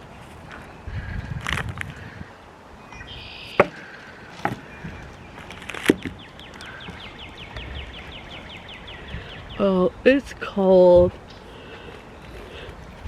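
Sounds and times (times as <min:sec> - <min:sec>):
bird chirping: 0:02.8 - 0:10.0, 0:11.1 - 0:13.0.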